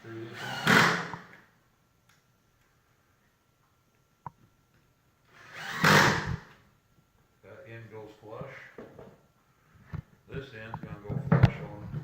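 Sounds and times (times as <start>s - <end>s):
drill driving screw into wood: 0.1s - 1.3s, 5.3s - 6.5s.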